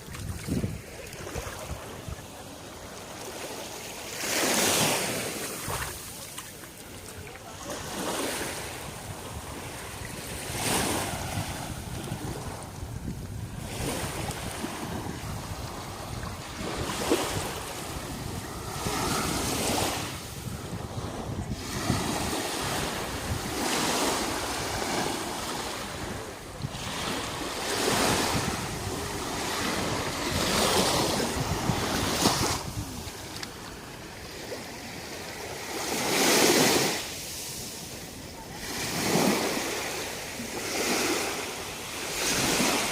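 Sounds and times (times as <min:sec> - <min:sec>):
wind on microphone: 0:00.0 - 0:02.4, 0:08.4 - 0:34.4
sea waves breaking on beach: 0:00.0 - 0:42.9.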